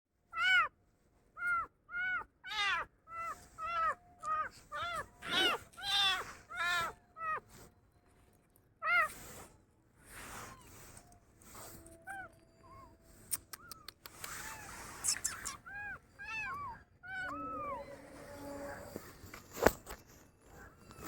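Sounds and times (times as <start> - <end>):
kitten meowing: 0.4 - 0.7, 1.4 - 7.4, 8.8 - 9.3, 12.1 - 19.0.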